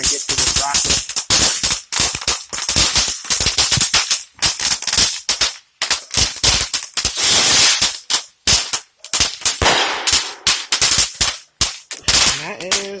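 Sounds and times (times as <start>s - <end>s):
firework crackling pops: 0.0s - 13.0s
firework hissing burst: 6.3s - 8.0s.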